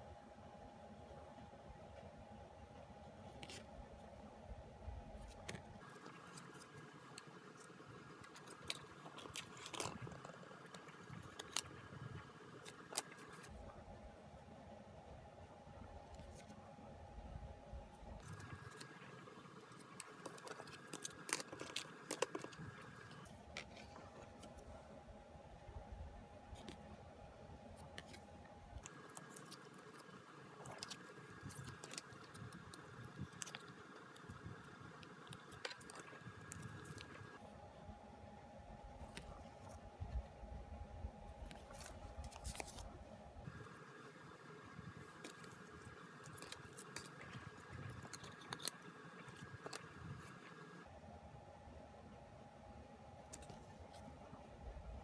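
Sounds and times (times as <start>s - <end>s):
faint high hum: 0.0s - 55.0s
packaging clicks and rustles: 5.2s - 11.8s, 18.2s - 24.7s, 27.8s - 37.4s, 41.4s - 43.0s, 44.9s - 50.8s, 53.3s - 54.0s
packaging being handled: 19.7s - 24.7s, 41.4s - 43.0s, 44.9s - 50.4s.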